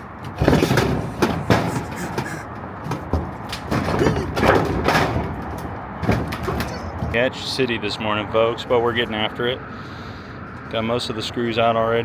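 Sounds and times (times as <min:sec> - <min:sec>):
knocks and clanks: 0:00.0 - 0:07.3.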